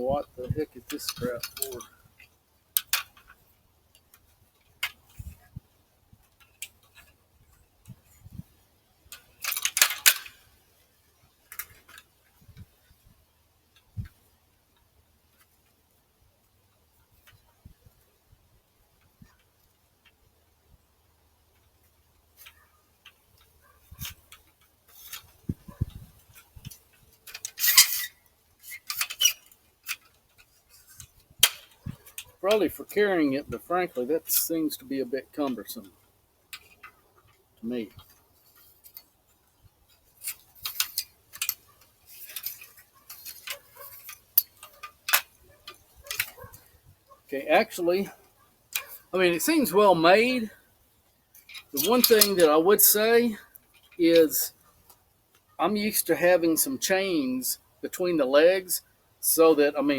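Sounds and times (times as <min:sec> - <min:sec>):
sharp clicks and light knocks: 0:00.4 - 0:08.5, 0:21.5 - 0:34.6, 0:35.4 - 0:49.2, 0:51.0 - 0:52.6
rasping rustle: 0:21.6 - 0:55.6.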